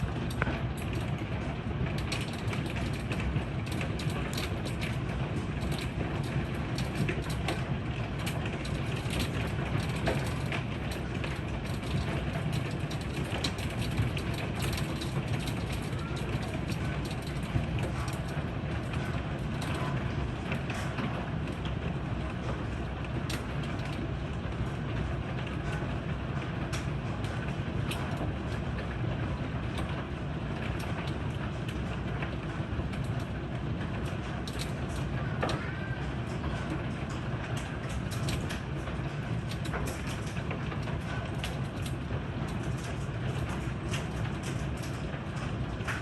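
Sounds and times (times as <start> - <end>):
hailstones striking hard surfaces: 0.0 - 21.5
heavy rain: 0.0 - 46.0.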